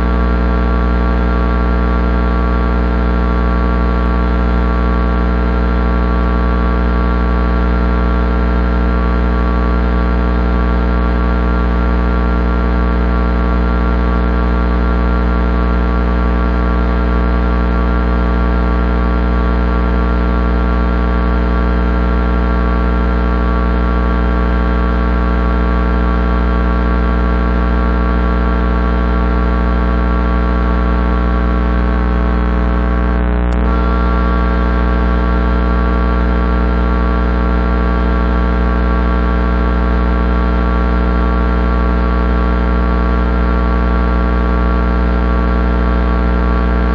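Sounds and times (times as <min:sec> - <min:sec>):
electrical transformer hum: 0:33.1 - 0:35.7.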